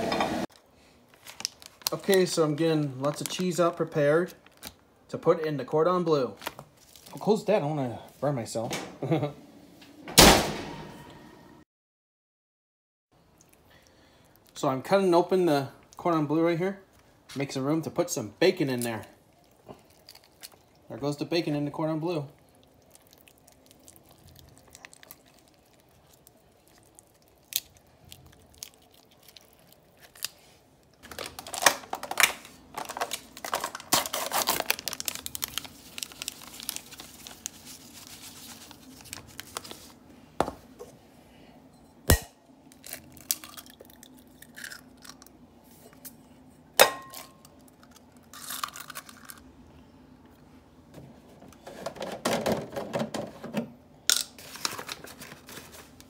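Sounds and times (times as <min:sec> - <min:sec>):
paper crinkling and rustling: 0:00.5 - 0:04.8, 0:06.4 - 0:07.4, 0:23.9 - 0:40.0, 0:54.4 - 0:56.0.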